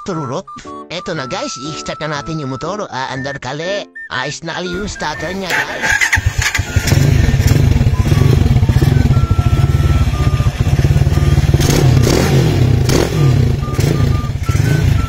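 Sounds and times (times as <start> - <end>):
motorcycle engine idling: 4.8 - 15.0.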